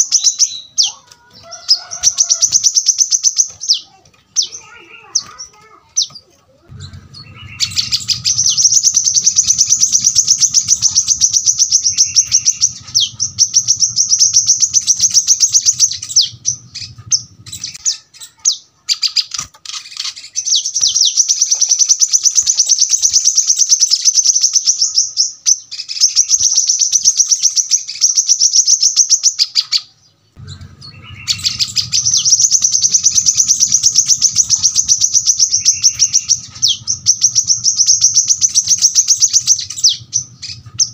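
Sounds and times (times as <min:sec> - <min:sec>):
bird singing rapid trills: 0:00.0 - 0:29.8, 0:30.4 - 0:40.9
low steady hum: 0:06.6 - 0:17.9, 0:30.4 - 0:40.9.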